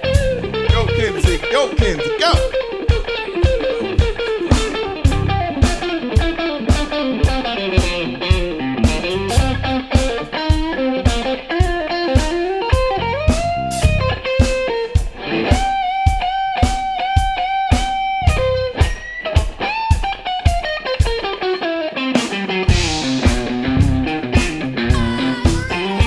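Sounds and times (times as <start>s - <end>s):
drums keeping steady beat: 0.0s - 21.4s, 22.2s - 26.0s
funk band groove: 0.0s - 21.5s, 22.1s - 26.0s
electric guitar solo: 0.0s - 26.0s.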